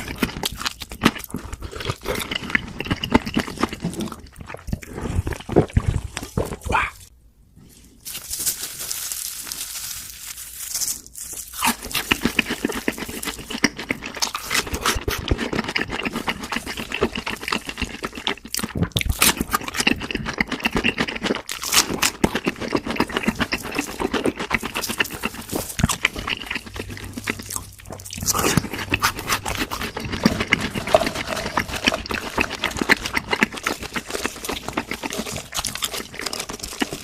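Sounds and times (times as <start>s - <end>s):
chewing crispy fried food: 0.0s - 7.1s, 8.1s - 37.0s.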